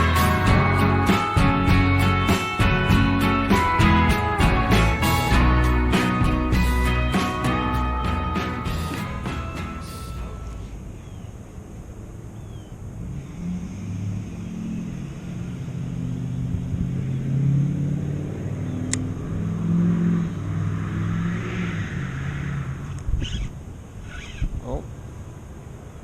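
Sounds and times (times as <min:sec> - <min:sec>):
motor engine running: 0:00.0 - 0:11.2.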